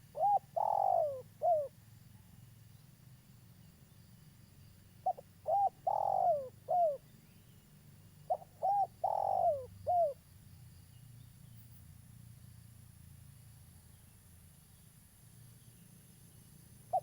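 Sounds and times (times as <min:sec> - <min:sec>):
dove cooing: 0:00.0 - 0:01.7, 0:05.0 - 0:07.0, 0:08.3 - 0:10.2.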